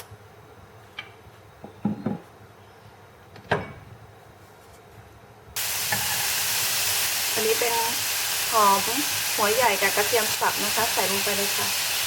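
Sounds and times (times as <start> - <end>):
bacon sizzling in frying pan: 5.6 - 12.0.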